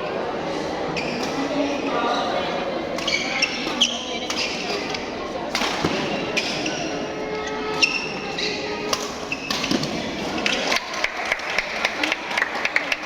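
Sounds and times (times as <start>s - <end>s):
crowd chattering: 0.0s - 13.0s
shoe squeaks on court: 0.9s - 2.4s, 3.0s - 5.1s, 6.1s - 10.0s.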